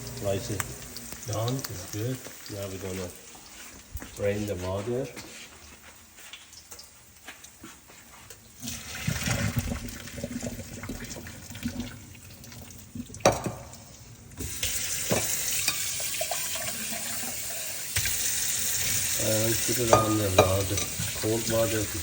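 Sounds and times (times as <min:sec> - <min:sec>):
kitchen tap running: 0:00.0 - 0:05.2, 0:08.4 - 0:22.0
water poured into a sink: 0:08.6 - 0:22.0
pot knocking: 0:13.2 - 0:13.6, 0:19.9 - 0:21.0.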